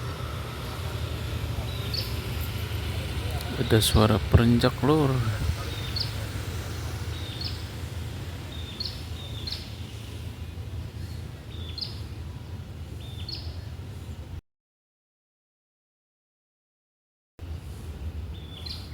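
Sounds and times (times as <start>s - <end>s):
bird chirping: 8.4s - 13.8s.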